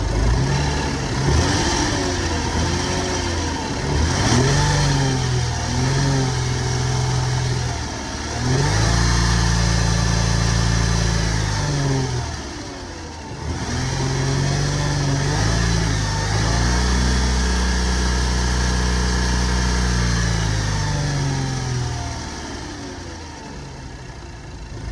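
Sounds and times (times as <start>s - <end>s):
car engine revving: 0.0s - 23.3s.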